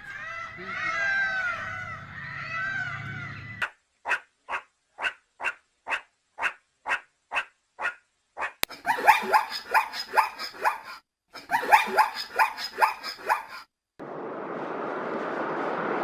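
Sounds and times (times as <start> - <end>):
dog barking: 4.1 - 10.8.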